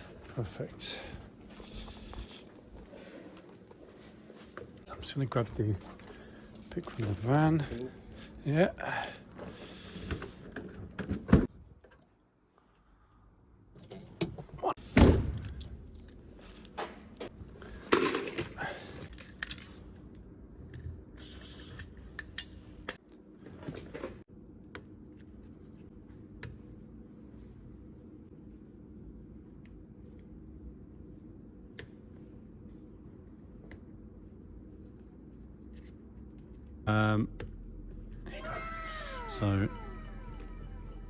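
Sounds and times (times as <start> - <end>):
metal tools clicking and clinking: 5.8 - 8.2, 13.8 - 14.4, 15.3 - 20.1.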